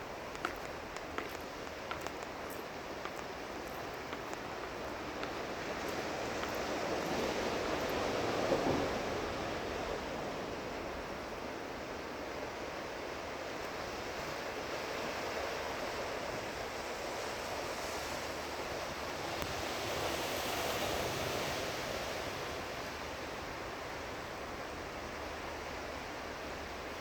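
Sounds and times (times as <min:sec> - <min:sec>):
ocean waves breaking: 0:00.0 - 0:11.4.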